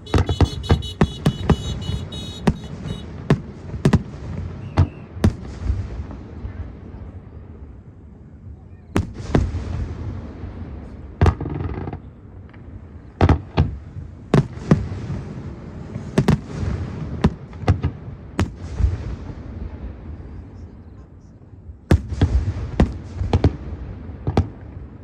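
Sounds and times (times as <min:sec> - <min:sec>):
fireworks bangs: 0:00.0 - 0:06.2.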